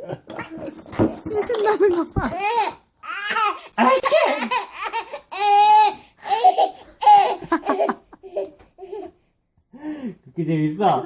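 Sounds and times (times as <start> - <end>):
baby laughing: 1.4 - 9.2.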